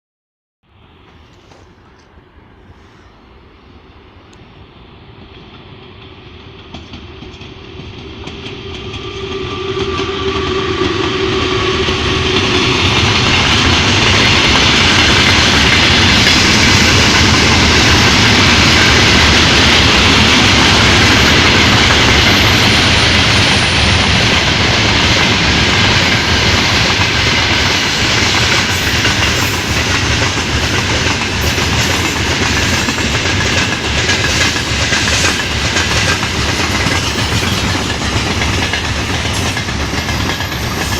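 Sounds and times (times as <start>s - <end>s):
steady locomotive whine: 0.6s - 40.9s
freight train passing: 0.7s - 40.9s
wheels clacking over rail joints: 24.2s - 40.9s.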